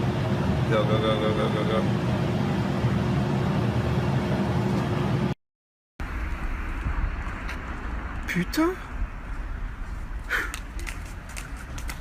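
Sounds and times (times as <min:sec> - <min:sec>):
low rumbling noise: 0:06.0 - 0:12.0.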